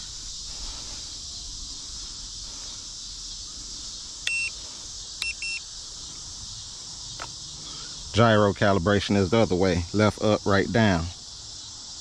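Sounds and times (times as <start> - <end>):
crickets chirping: 0.0 - 12.0
high electronic beeps: 4.3 - 4.6, 5.2 - 5.6.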